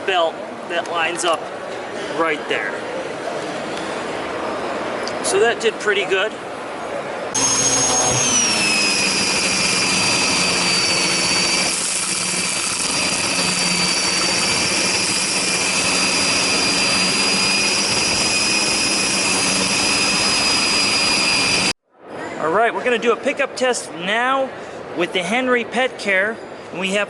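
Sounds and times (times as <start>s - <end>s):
vacuum cleaner motor whine: 7.4s - 21.8s.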